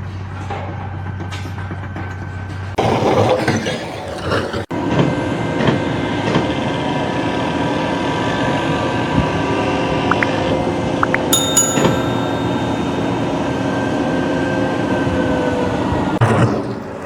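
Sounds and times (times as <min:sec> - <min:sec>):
steady tones: 0:11.0 - 0:13.7.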